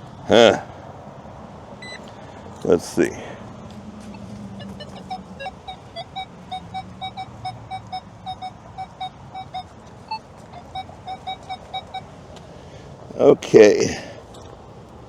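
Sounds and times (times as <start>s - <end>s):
metal detector short beeps: 1.8s - 2.1s, 4.1s - 12.2s.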